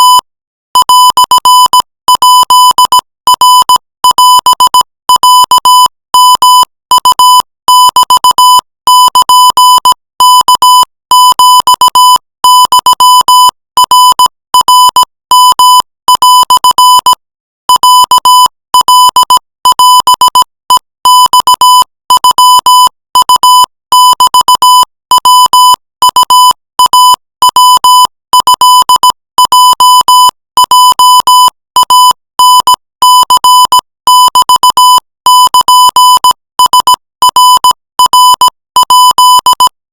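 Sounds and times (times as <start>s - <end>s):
morse code beeps: 0.8s - 17.0s.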